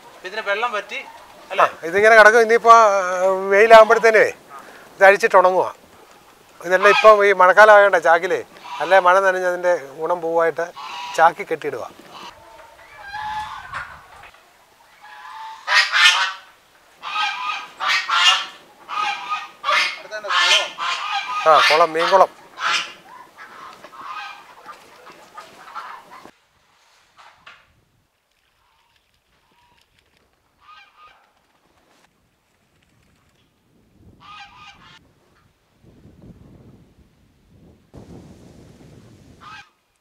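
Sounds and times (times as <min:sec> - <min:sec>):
geese honking: 0:00.0 - 0:04.8, 0:06.1 - 0:09.6, 0:10.6 - 0:26.4, 0:30.6 - 0:31.2, 0:34.2 - 0:35.0, 0:39.4 - 0:39.8
waterfowl calling: 0:00.0 - 0:26.4, 0:30.6 - 0:31.4, 0:34.2 - 0:35.0, 0:39.4 - 0:39.8.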